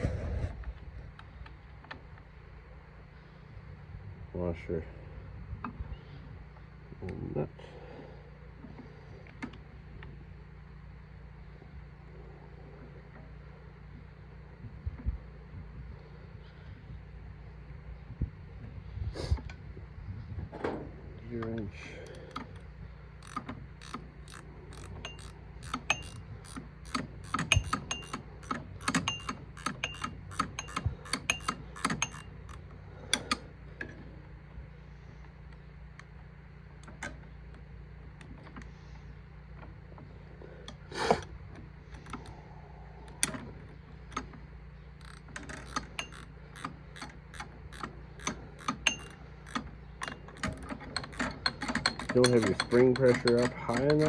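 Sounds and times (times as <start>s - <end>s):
ratchet wrench clicking: 22.0s - 22.6s, 23.2s - 33.4s, 41.9s - 42.4s, 45.0s - 54.0s.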